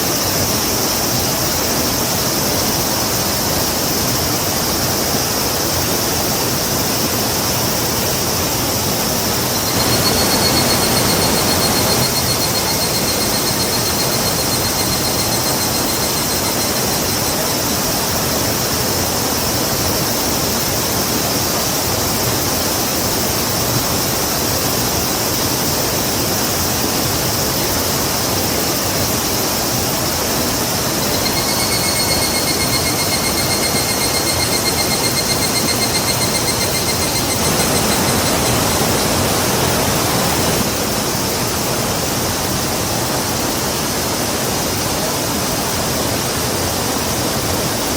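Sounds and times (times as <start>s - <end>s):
river rushing: 2.8s - 19.9s, 20.5s - 47.9s
high rapid trill: 9.4s - 17.5s, 30.8s - 40.7s.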